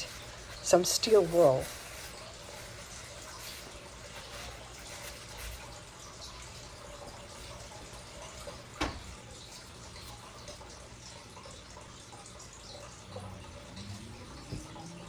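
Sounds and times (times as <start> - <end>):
cloth wiping metal: 0.0 - 8.7.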